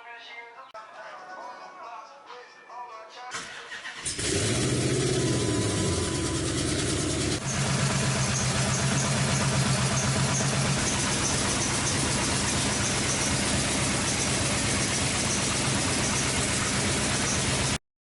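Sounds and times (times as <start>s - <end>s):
car engine idling: 4.0s - 17.8s.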